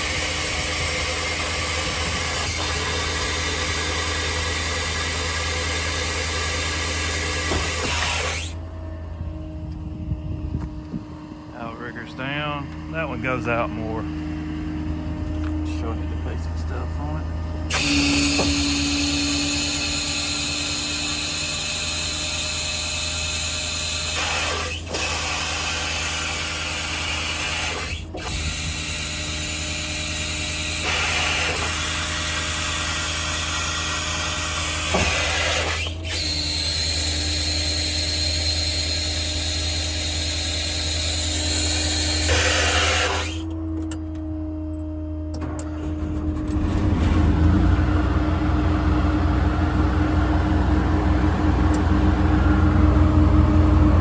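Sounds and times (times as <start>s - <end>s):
hydraulic whine and hiss: 0.0s - 8.6s, 17.7s - 43.6s
truck engine running: 0.0s - 42.4s, 45.6s - 54.0s.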